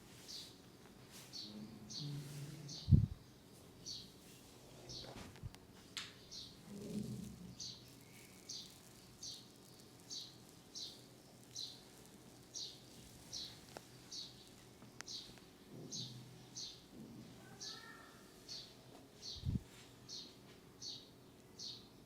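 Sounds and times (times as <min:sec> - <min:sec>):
bird chirping: 0:07.3 - 0:16.9.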